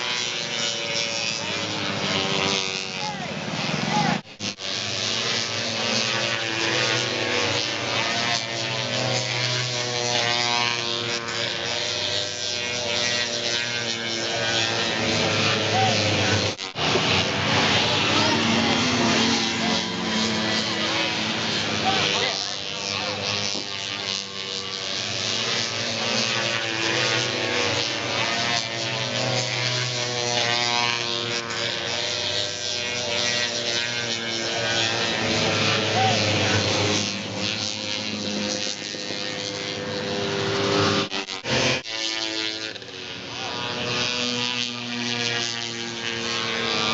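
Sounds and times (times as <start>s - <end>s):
snowmobile engines droning: 0.0s - 46.9s.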